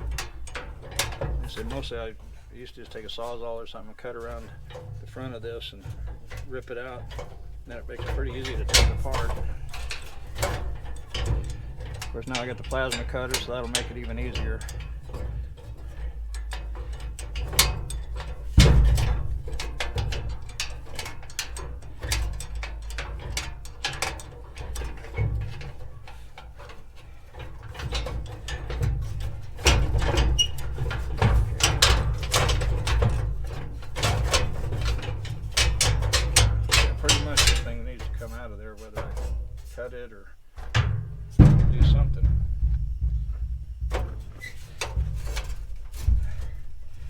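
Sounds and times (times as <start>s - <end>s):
hand tools clicking and clanking: 0.0s - 47.0s
low rumble: 41.2s - 47.0s.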